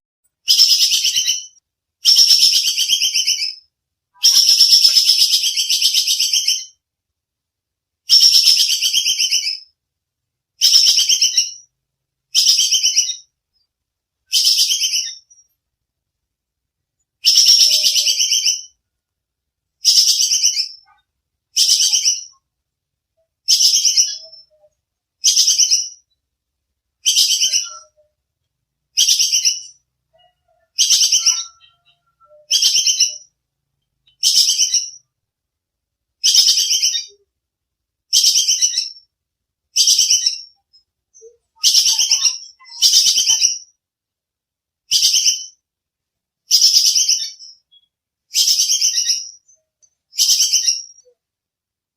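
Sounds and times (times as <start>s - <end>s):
squirrel chatter call: 4.2s - 6.7s, 17.2s - 18.7s, 29.0s - 33.3s, 41.2s - 43.6s.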